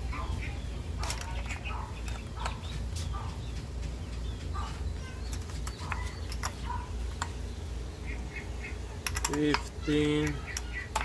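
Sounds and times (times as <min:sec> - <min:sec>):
bird chirps: 0:00.0 - 0:09.0, 0:09.6 - 0:11.0
light metal clicks and taps: 0:09.0 - 0:11.0.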